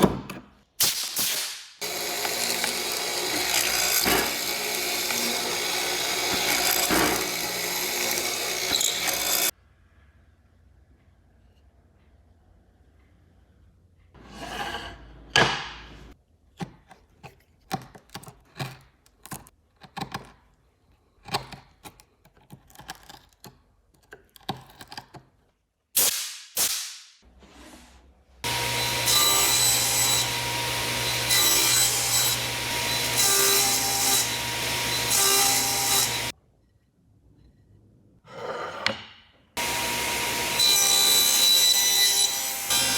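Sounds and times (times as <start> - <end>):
power tool running: 1.8 - 9.5, 28.4 - 36.3, 39.6 - 42.9.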